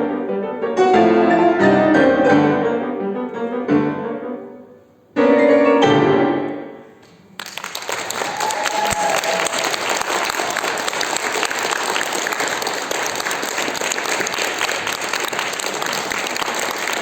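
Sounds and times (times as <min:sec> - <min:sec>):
piano chords: 0:00.0 - 0:07.4
audience applause: 0:07.3 - 0:17.0.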